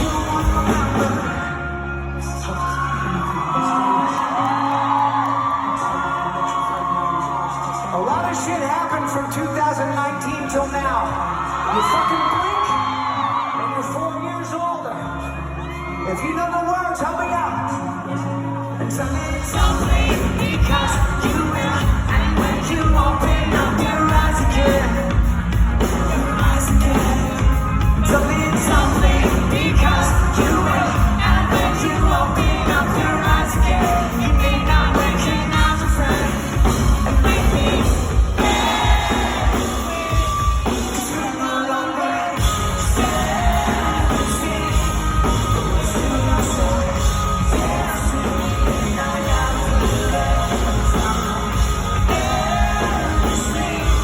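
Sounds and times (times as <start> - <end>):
live rock band playing: 0.0 - 4.8, 15.0 - 54.0
lead vocals: 0.0 - 54.0
audience singing along: 18.1 - 54.0.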